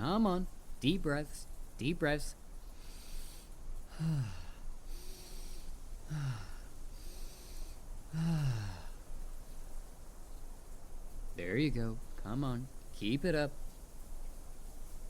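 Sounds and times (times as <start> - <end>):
airy breaths in: 2.6 - 9.8
man sighing breaths out: 2.8 - 9.2.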